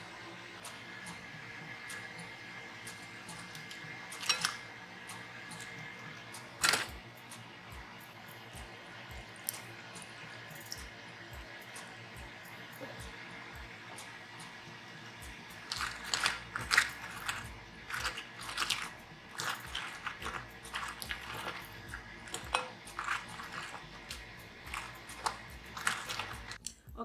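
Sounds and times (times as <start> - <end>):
crunching fried chicken: 15.6 - 26.7.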